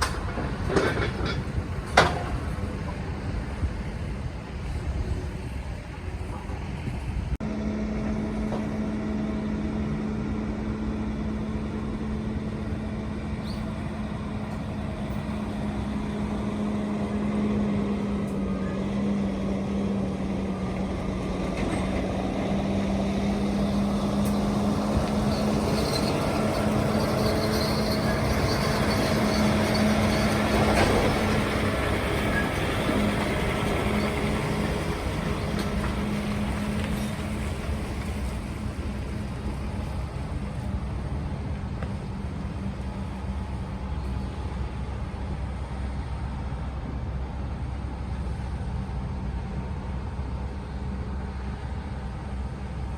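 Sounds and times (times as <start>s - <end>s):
excavator engine and hydraulics: 0.0s - 52.9s.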